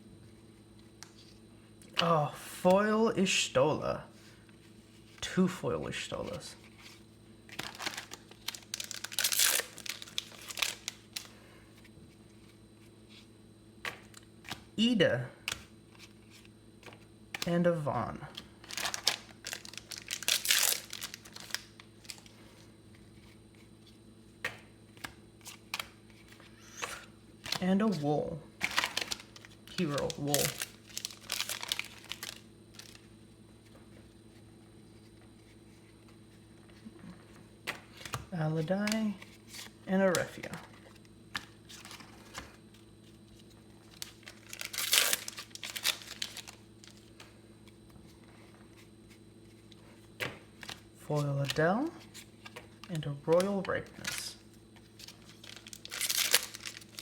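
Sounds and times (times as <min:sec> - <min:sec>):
low electrical hum: 0:00.0 - 0:57.0
trading cards handled: 0:06.1 - 0:14.7, 0:28.6 - 0:57.0
foil wrapper crinkling and tearing: 0:07.5 - 0:11.4, 0:18.6 - 0:22.3, 0:28.6 - 0:33.0, 0:43.3 - 0:47.2, 0:52.8 - 0:57.0.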